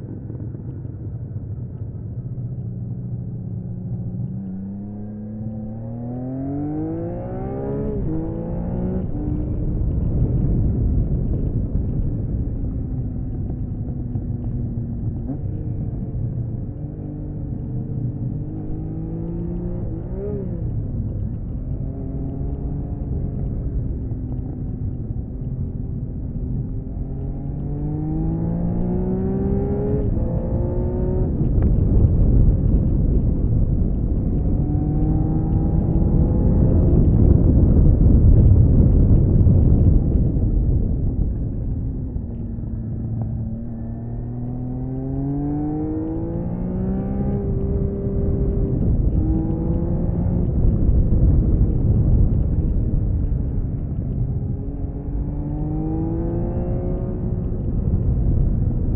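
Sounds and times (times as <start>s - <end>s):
motorcycle engine revving: 42.4s - 51.9s.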